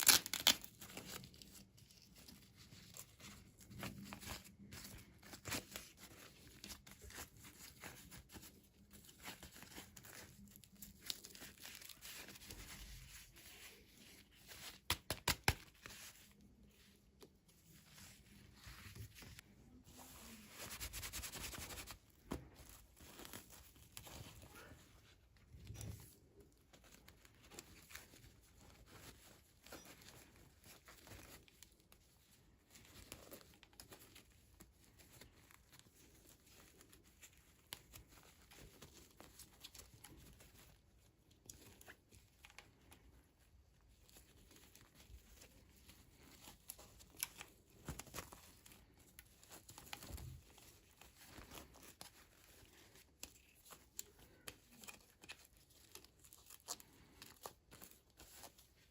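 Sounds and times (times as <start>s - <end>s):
packaging crinkling and tearing: 0.0s - 2.3s.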